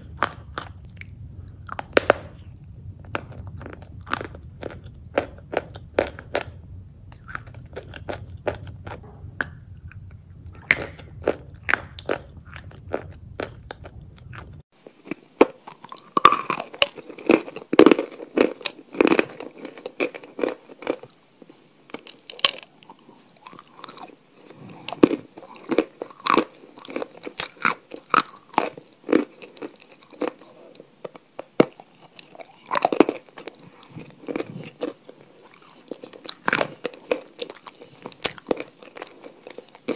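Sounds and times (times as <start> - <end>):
low hum: 0.0 - 14.7
crunchy food being chewed: 0.0 - 39.9.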